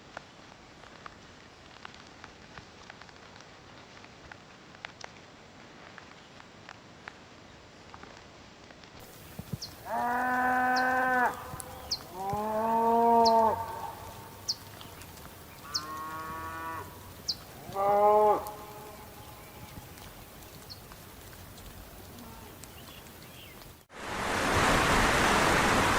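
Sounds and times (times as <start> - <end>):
cattle mooing: 9.8 - 14.3, 15.6 - 19.8.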